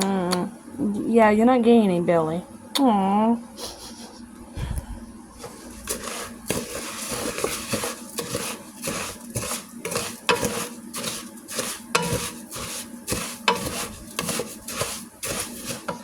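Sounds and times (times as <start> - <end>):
food sizzling: 5.4 - 16.0
utensil scraping frying pan: 5.4 - 16.0.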